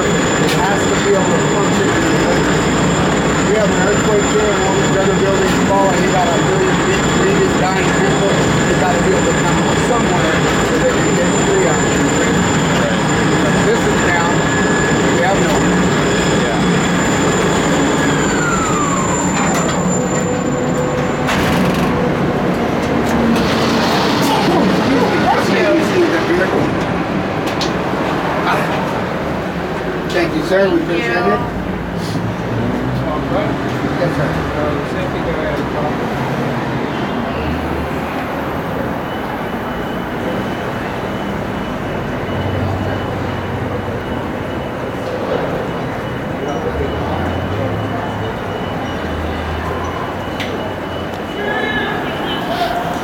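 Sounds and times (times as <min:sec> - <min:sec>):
high steady tone: 0:00.0 - 0:21.4
faint high whine: 0:00.0 - 0:21.5, 0:23.2 - 0:26.8
construction machinery noise: 0:00.0 - 0:53.0
whine falling in pitch: 0:23.1 - 0:26.7.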